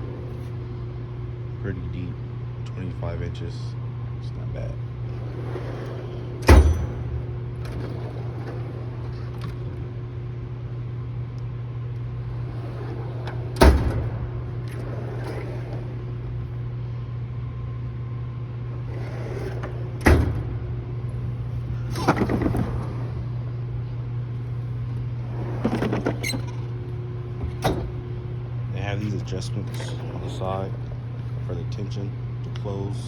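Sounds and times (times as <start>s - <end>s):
steady low hum: 0.0s - 33.0s
steel drawers sliding and banging shut: 5.2s - 10.0s, 12.3s - 16.6s, 18.8s - 23.3s, 25.2s - 31.4s
drawer rattling shut: 6.4s - 9.8s, 12.7s - 15.8s, 19.0s - 20.7s, 25.4s - 26.6s, 27.3s - 28.2s.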